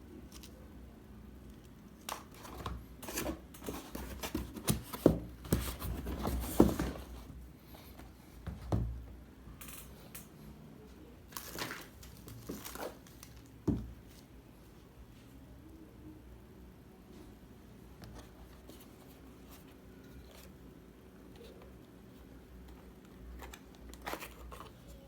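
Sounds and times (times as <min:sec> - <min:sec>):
packaging rustling and crinkling: 0:11.3 - 0:14.2, 0:23.3 - 0:25.0.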